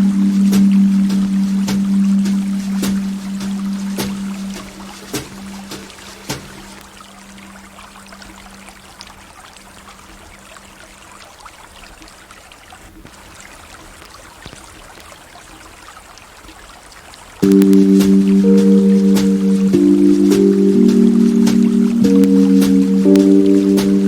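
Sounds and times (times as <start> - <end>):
low held music tone: 0.0 - 10.8, 17.4 - 24.0
river water flowing: 0.0 - 14.4, 15.2 - 24.0
water trickling and splashing: 0.0 - 24.0.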